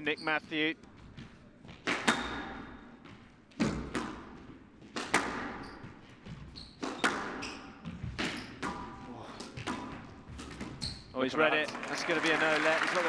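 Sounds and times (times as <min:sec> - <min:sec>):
squash ball cracks on racket and wall: 0:01.8 - 0:02.7, 0:03.6 - 0:05.6, 0:06.8 - 0:07.4, 0:08.1 - 0:10.8.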